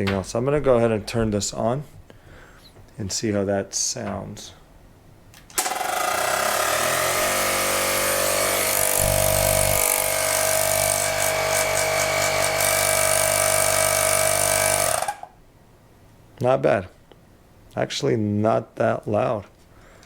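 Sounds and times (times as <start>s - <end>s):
air compressor humming: 5.6s - 15.3s.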